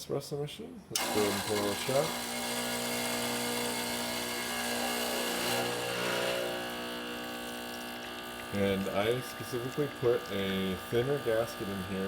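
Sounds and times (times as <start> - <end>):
espresso machine pump humming: 1.0 - 12.0.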